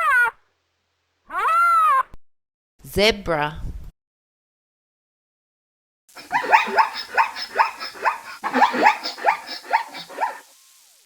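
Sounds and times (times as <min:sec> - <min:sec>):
zebra barking yelps: 0:06.2 - 0:10.5.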